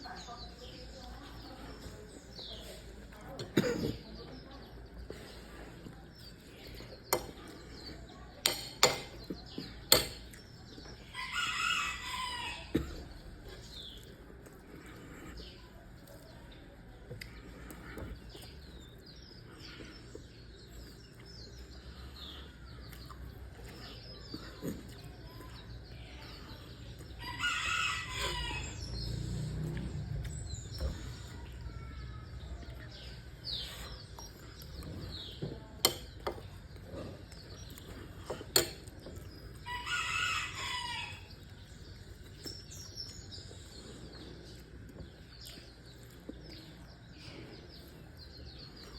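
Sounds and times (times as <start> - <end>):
small birds chirping: 0.0 - 48.9
rooster crowing: 11.2 - 12.7, 27.2 - 28.8, 39.7 - 41.3.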